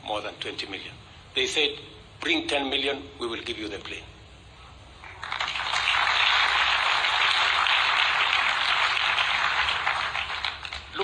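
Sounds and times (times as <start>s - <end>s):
audience applauding: 5.0s - 11.0s.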